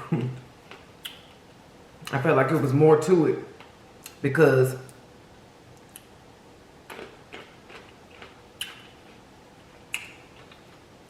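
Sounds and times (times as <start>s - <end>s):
mouth clicks and smacks chewing: 0.6s - 1.4s, 6.9s - 9.2s, 9.9s - 10.8s.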